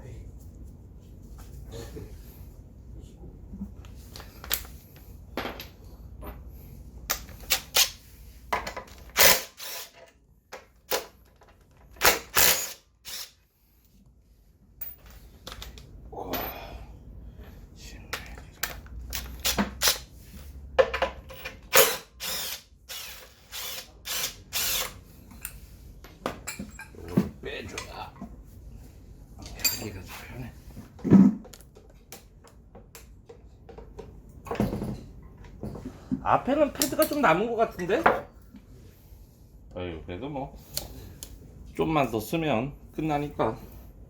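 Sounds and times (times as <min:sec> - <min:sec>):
clinks of tools and metal parts: 0:04.1 - 0:07.9, 0:14.8 - 0:16.7, 0:20.8 - 0:22.4, 0:25.3 - 0:28.2, 0:29.4 - 0:30.2.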